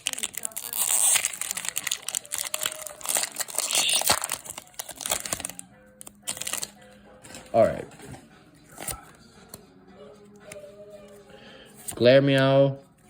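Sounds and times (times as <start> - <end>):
foil wrapper crackling: 0.0 - 6.7.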